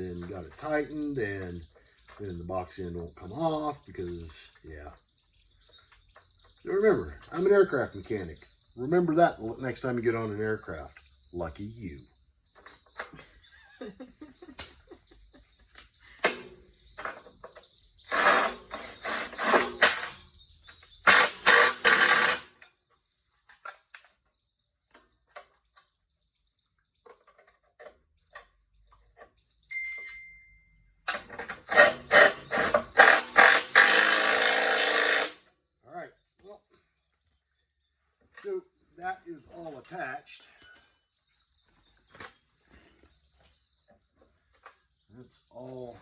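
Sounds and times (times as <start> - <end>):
ratchet wrench clicking: 21.1 - 22.5
tool clinks: 29.7 - 30.6, 40.6 - 41.4.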